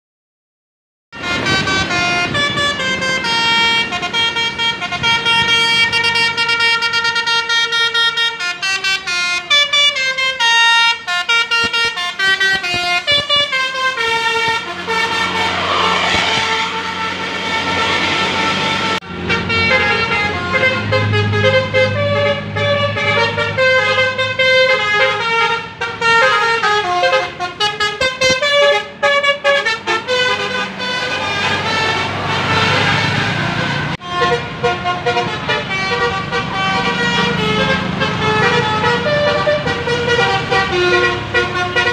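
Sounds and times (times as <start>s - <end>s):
multi-tone bus horn melodies: 1.1s - 41.9s
low engine hum: 12.7s - 23.4s
rush of noise: 14.6s - 19.0s.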